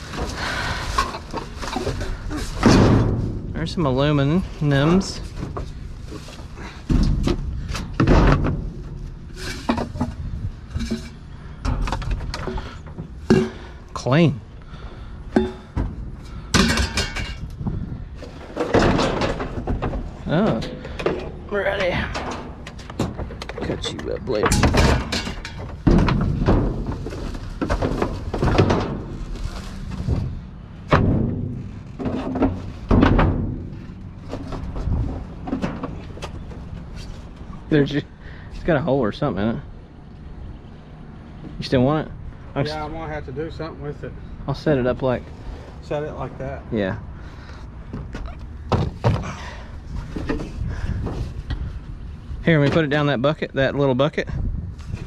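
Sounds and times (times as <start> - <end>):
scrap metal clanking: 0.0 - 14.1, 15.3 - 17.5, 18.2 - 36.2
heavy thumps: 15.3 - 29.2, 29.9 - 36.4.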